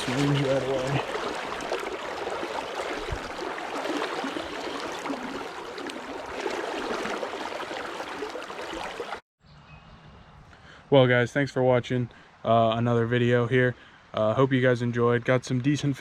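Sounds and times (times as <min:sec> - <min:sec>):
river water rushing: 0:00.0 - 0:09.2
small splashes and ticks: 0:00.0 - 0:09.2.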